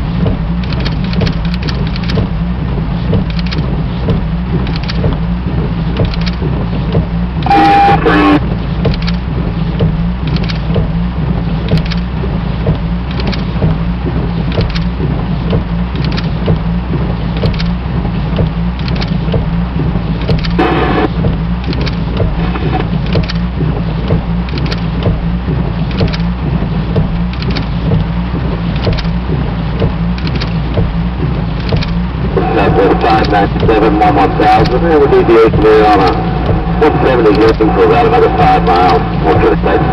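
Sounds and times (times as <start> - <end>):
light aircraft engine drone: 0.0 - 39.9
clicks and crackles: 0.3 - 2.3, 3.1 - 5.2, 10.2 - 10.9, 12.7 - 13.8, 14.5 - 16.7, 20.2 - 26.3, 26.9 - 28.1, 28.7 - 34.9
radio burst: 7.4 - 8.4, 20.6 - 21.1, 32.4 - 39.9.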